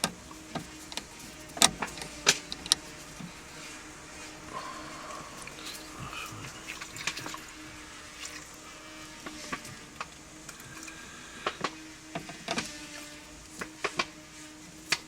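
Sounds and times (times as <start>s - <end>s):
small clicks and light knocks: 0.0s - 4.3s
faint steady hum: 0.0s - 15.0s.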